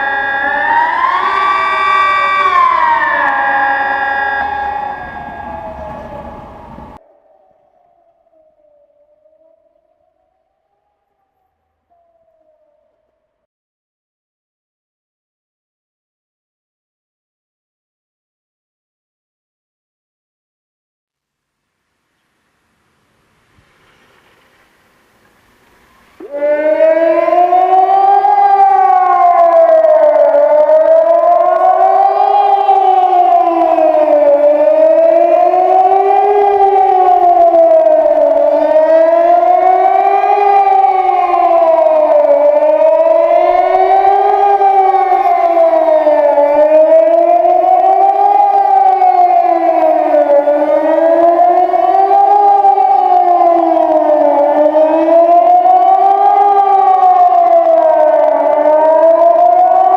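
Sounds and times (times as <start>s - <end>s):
rising and falling siren: 0.0s - 13.5s, 26.0s - 59.9s.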